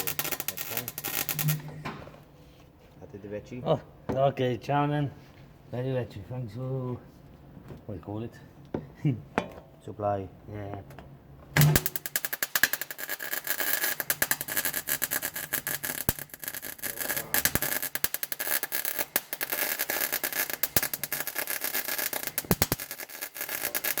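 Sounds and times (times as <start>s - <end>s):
electric arc welding crackling: 0.0s - 1.8s, 11.6s - 24.0s.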